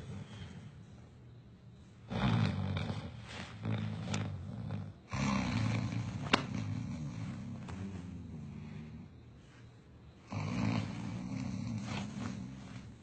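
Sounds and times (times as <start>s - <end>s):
man snoring loudly: 2.1s - 9.0s, 10.3s - 12.7s.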